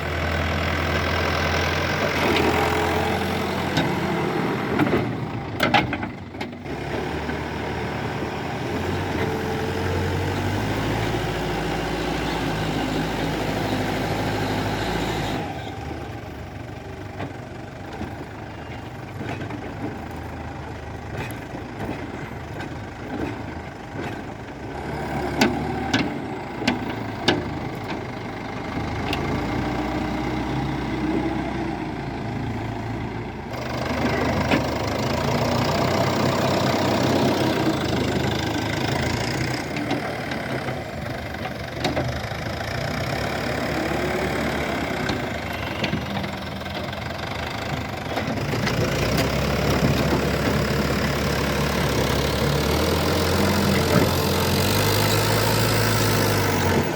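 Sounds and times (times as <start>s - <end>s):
backhoe diesel engine running: 0.0s - 56.9s.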